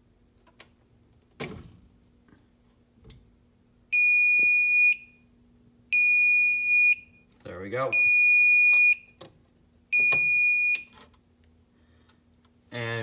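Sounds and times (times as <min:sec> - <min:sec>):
high-pitched alarm beep: 0:07.9 - 0:09.1, 0:09.9 - 0:10.9.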